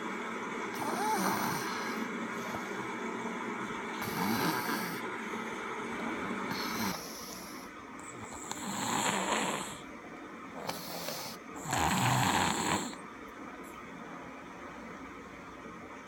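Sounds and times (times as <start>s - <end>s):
man snoring: 0.7s - 2.8s, 4.0s - 5.1s, 6.5s - 9.8s, 10.6s - 13.0s
faint breath: 4.0s - 9.9s.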